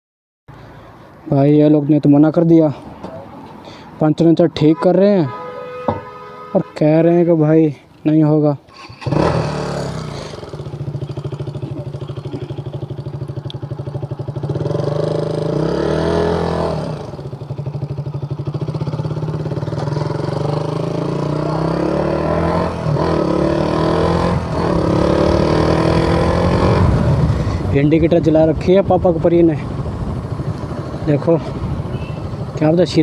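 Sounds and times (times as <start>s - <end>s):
motorcycle revving and pulling away: 8.7s - 33.0s
motorcycle engine idling: 9.0s - 15.6s, 16.9s - 21.6s, 29.7s - 33.0s.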